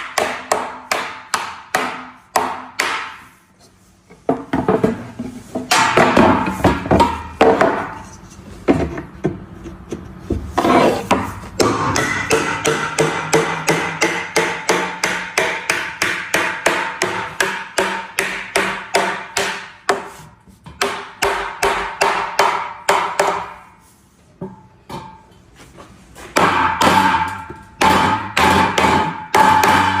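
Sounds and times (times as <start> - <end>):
hammer striking wood: 0.0 - 3.2, 5.7 - 7.9, 11.1 - 20.1, 20.7 - 23.6, 26.4 - 30.0.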